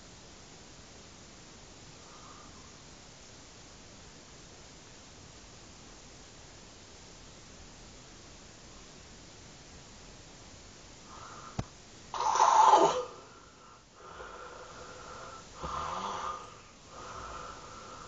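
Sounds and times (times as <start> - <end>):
quiet breaths: 1.6 - 4.2, 10.9 - 18.0
woman snoring: 12.2 - 18.0.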